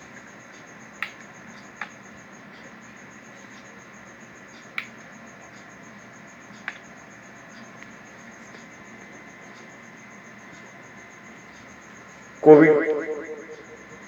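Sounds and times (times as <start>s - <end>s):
cricket chirping: 0.0s - 14.0s
sharp clicks: 1.0s - 2.0s.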